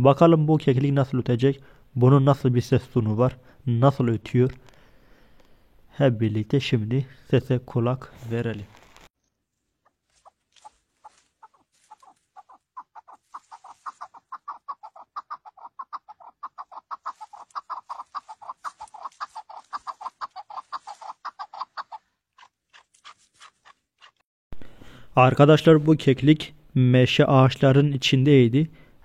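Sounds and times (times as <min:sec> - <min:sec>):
partridge calling: 0:09.8 - 0:22.1.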